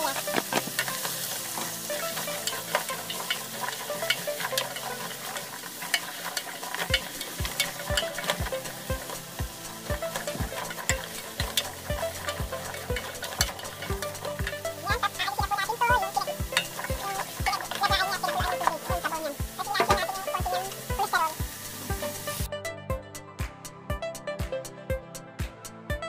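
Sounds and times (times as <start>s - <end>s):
food sizzling in hot oil: 0.0s - 22.5s
spatula clicking against pan: 16.0s - 19.0s.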